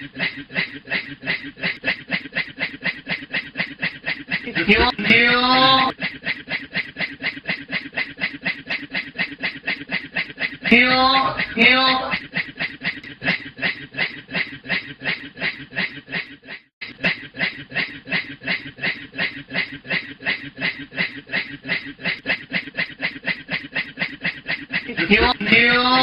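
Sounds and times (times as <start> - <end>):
man imitating steam train chugging: 0.0 - 26.0.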